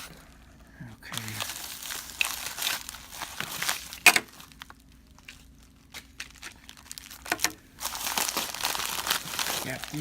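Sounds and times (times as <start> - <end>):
packaging crinkling and rustling: 0.0 - 10.0.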